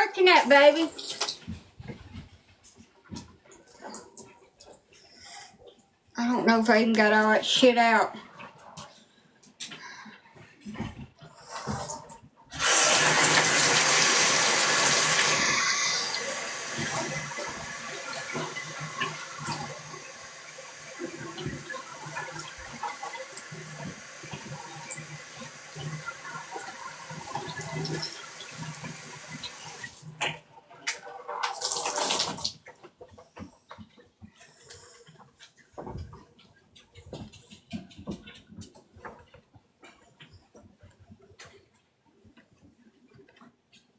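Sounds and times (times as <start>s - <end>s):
toilet flushing: 12.5s - 30.4s, 31.0s - 32.6s
tank refilling with trickling water: 12.5s - 32.8s.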